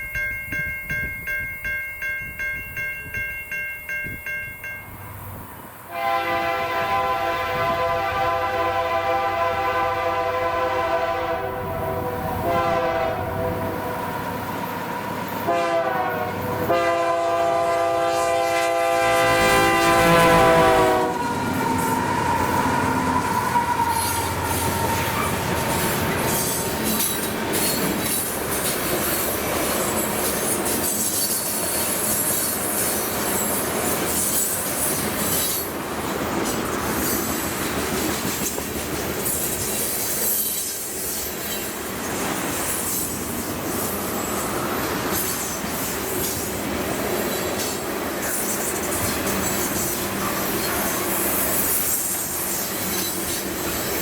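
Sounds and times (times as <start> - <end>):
train cars clickety-clack: 5.1 - 54.0
locomotive air horn blasts: 5.9 - 14.5, 15.4 - 26.2
wheel squeal: 21.2 - 29.2.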